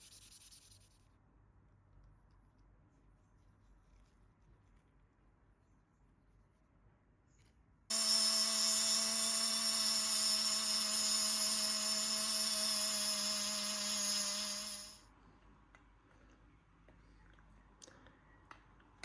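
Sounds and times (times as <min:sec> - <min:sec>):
electric power tool whining: 0:07.9 - 0:15.0.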